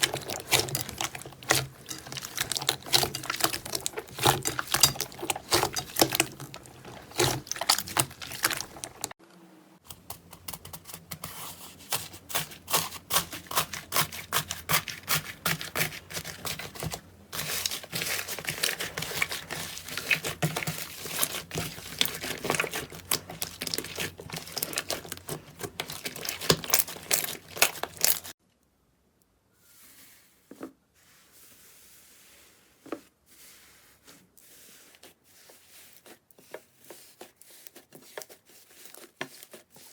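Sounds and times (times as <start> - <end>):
slime crackling and popping: 0.0 - 9.2, 17.6 - 28.4.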